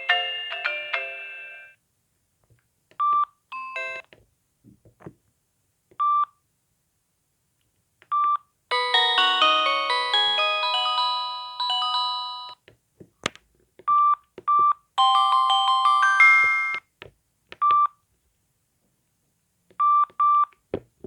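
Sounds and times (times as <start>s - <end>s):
polyphonic ringtone: 8.7s - 12.6s, 15.0s - 16.8s
short keypad beeps: 16.4s - 16.8s.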